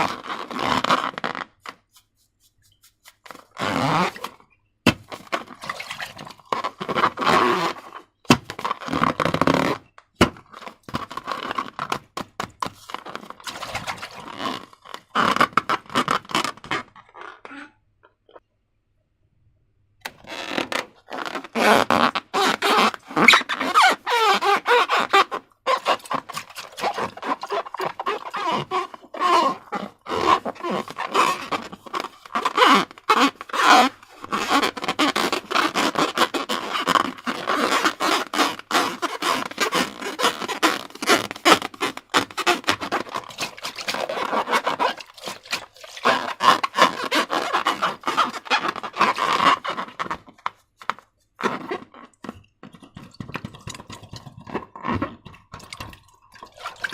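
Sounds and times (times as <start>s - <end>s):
rubber balloon squeaks: 0.0s - 2.0s, 3.2s - 18.4s, 20.0s - 56.9s
slime squelching: 1.8s - 7.3s, 13.3s - 15.2s, 21.3s - 36.1s, 37.0s - 56.9s.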